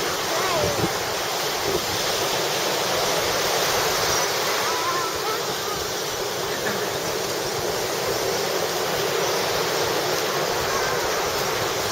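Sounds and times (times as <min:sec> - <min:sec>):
surf washing up on beach: 0:00.0 - 0:11.9.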